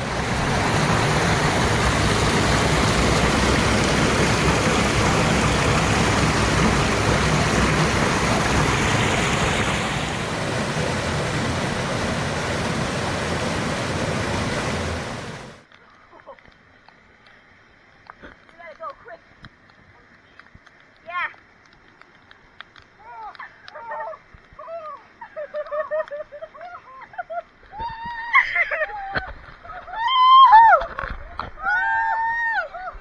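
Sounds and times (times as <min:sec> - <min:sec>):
water rushing over rocks: 0:00.0 - 0:15.8.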